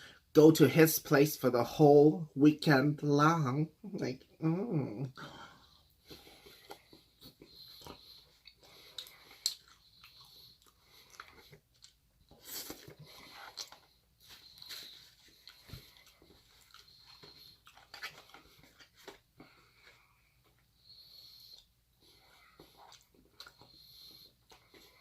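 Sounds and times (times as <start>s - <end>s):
chewing and biting: 6.0s - 25.0s
soft food crunches: 6.6s - 19.2s.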